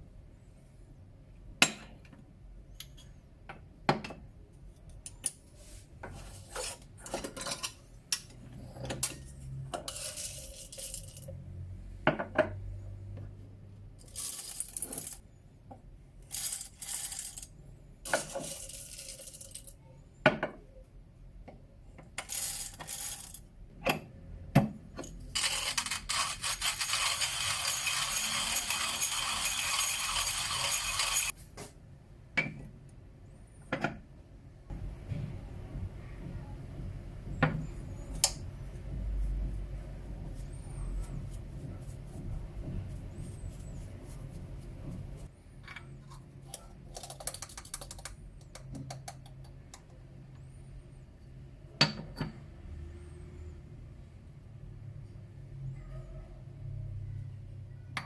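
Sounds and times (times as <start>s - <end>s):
small hard objects clinking: 25.4s - 31.3s.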